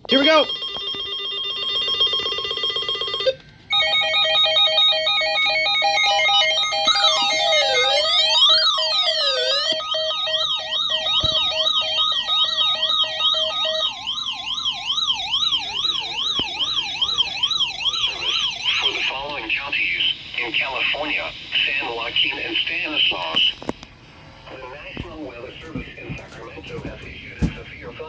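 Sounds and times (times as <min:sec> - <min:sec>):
steady alert tone: 0:03.7 - 0:14.0
warbling siren wail: 0:03.7 - 0:19.1
rapid pulsing beeps: 0:04.8 - 0:14.5.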